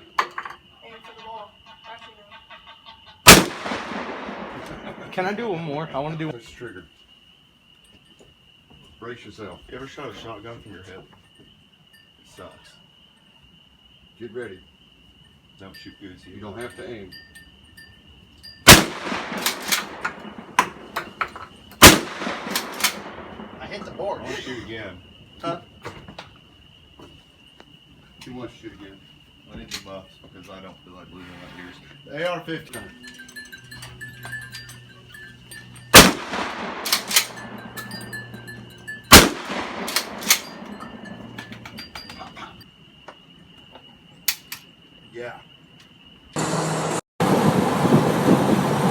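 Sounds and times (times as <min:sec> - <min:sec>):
insect trill: 0:00.0 - 0:46.4
shotgun shots with echo: 0:03.3 - 0:05.1, 0:18.7 - 0:20.9, 0:21.8 - 0:24.1, 0:35.9 - 0:37.6, 0:39.1 - 0:40.8.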